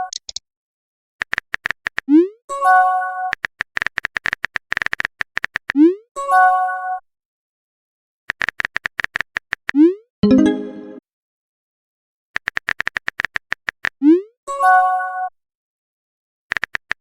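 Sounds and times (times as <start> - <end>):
short message chime: 10.2 - 11.0.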